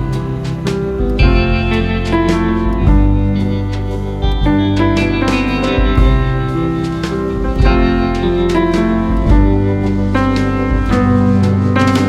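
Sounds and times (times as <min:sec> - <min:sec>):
piano or keyboard notes: 0:00.0 - 0:12.0
steady bass: 0:00.0 - 0:12.0.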